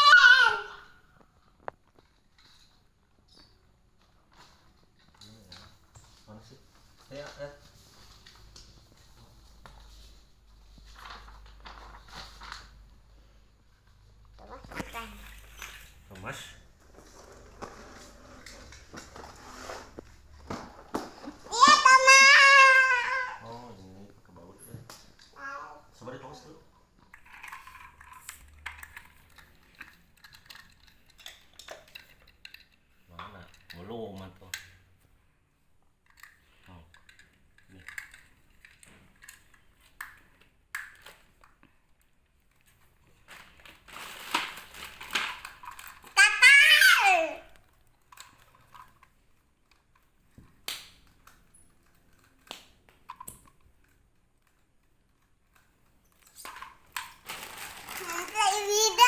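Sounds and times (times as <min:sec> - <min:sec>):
plastic toy parts clicking: 0:27.1 - 0:34.7, 0:36.0 - 0:41.6, 0:44.0 - 0:46.4, 0:47.6 - 0:59.0.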